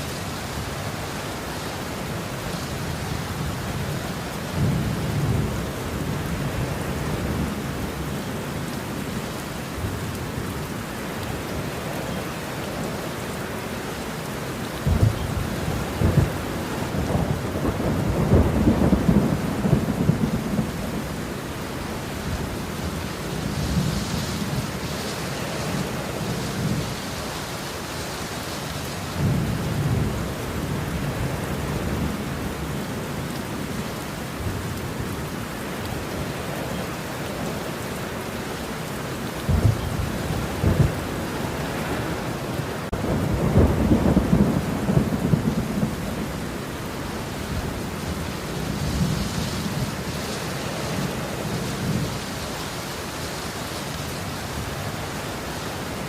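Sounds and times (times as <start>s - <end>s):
steady rain falling: 0.0s - 56.0s
thunder rumbling: 14.8s - 21.3s, 39.4s - 52.4s.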